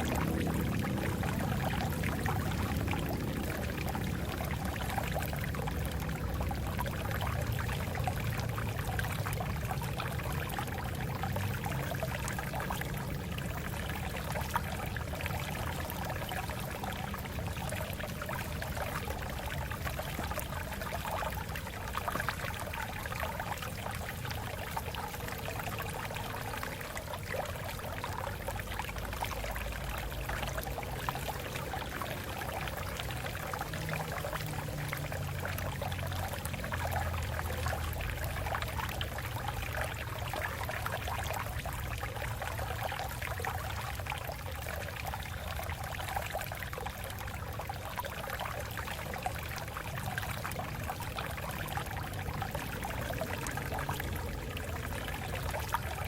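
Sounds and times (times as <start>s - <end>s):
stream water babbling over rocks: 0.0s - 56.0s.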